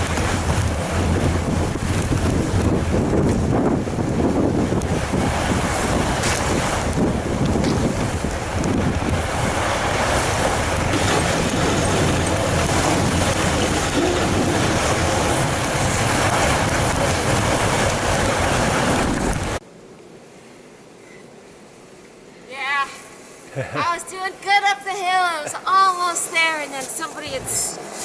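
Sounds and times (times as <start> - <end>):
wind noise on microphone: 0.0 - 19.6.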